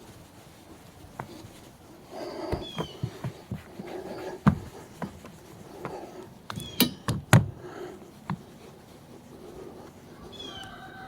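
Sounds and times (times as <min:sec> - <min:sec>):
sharp knocks and clicks: 0:04.4 - 0:07.5.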